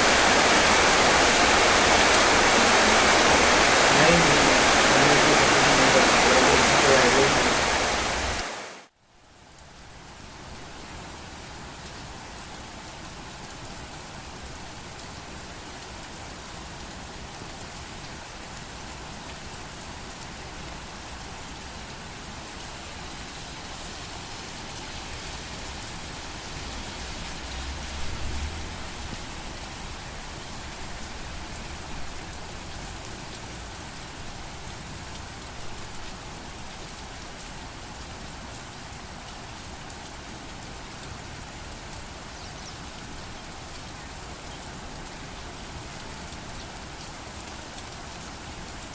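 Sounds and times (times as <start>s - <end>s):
steady rain falling: 0.0s - 48.9s.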